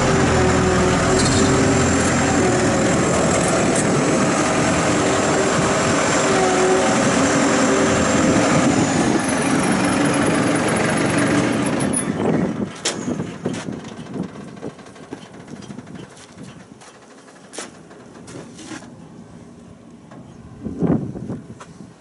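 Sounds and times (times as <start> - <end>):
high whine gliding down: 0.0 - 11.2
diesel engine running: 0.0 - 21.2.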